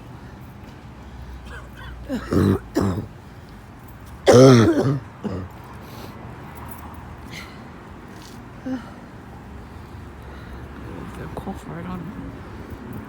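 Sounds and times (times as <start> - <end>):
person clearing throat: 1.5 - 3.1, 4.3 - 5.5
person coughing: 1.5 - 3.1, 4.3 - 5.5.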